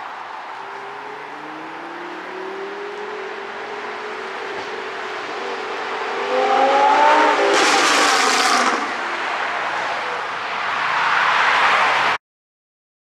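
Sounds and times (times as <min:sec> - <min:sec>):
car engine revving: 0:00.0 - 0:09.5
harsh exhaust rushing burst: 0:03.4 - 0:09.4.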